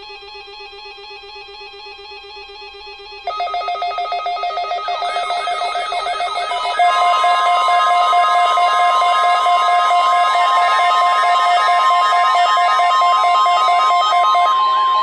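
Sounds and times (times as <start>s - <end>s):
steady warning alarm tone: 0.0s - 15.0s
pulsing alert tones: 3.3s - 15.0s.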